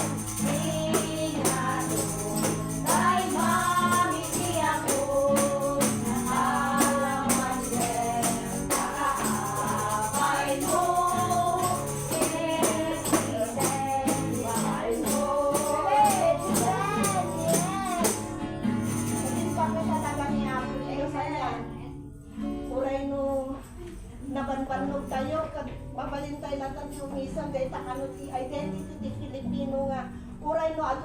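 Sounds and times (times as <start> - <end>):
congregation singing: 0.0 - 17.8
percussion beat: 0.0 - 20.3.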